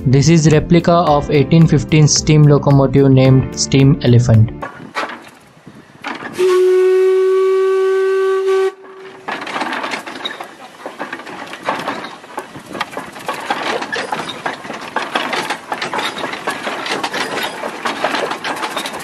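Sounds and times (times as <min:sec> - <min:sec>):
steam locomotive mechanism clattering: 0:04.6 - 0:19.0.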